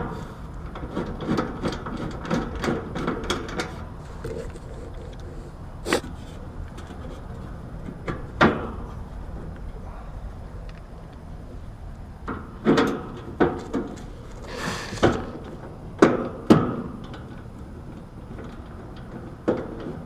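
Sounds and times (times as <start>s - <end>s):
metal knocks and clanks: 0.0s - 4.7s, 12.2s - 20.0s
short scraping hiss: 14.4s - 15.2s.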